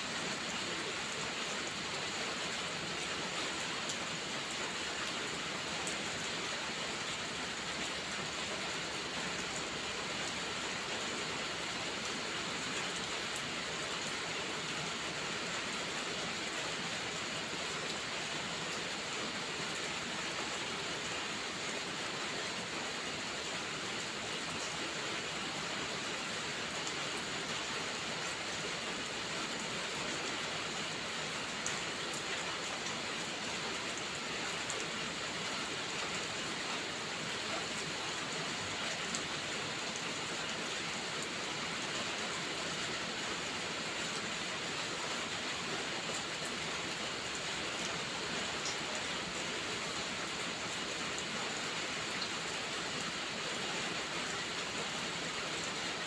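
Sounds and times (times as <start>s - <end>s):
heavy rain: 0.0s - 56.0s.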